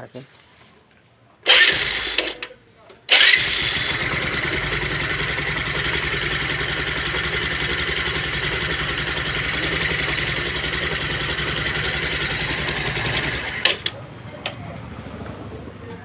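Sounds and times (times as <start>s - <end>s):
motorcycle engine idling: 3.2s - 14.0s.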